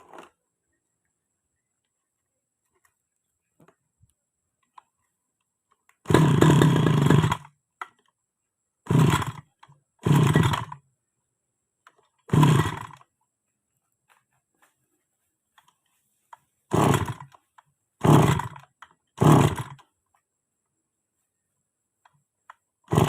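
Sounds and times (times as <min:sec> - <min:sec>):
grass cutter engine pull-starting: 0:00.0 - 0:00.4, 0:05.9 - 0:08.1, 0:08.8 - 0:10.8, 0:11.9 - 0:13.2, 0:16.7 - 0:20.0, 0:22.0 - 0:23.0.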